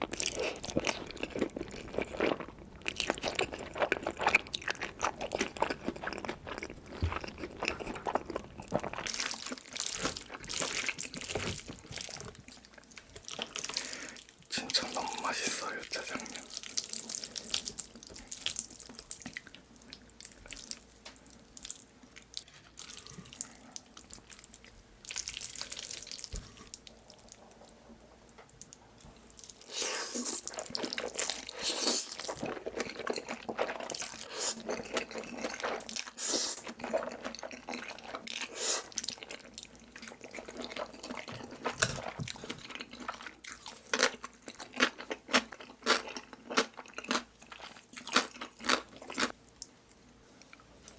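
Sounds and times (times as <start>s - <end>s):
wet slurping and chewing: 0.1s - 20.8s, 29.4s - 49.4s.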